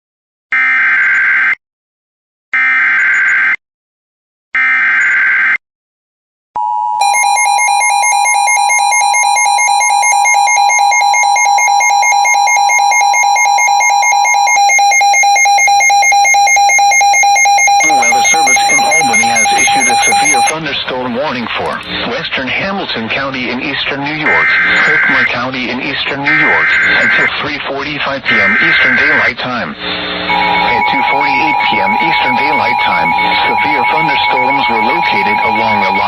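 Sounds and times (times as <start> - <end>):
two-tone attention signal: 6.9 - 20.5, 30.3 - 36.0
synthesized announcer voice: 17.6 - 22.2, 24.2 - 25.4, 26.2 - 27.4, 28.2 - 29.4, 30.3 - 36.0
warbling data bursts: 17.7 - 21.9, 30.3 - 36.0.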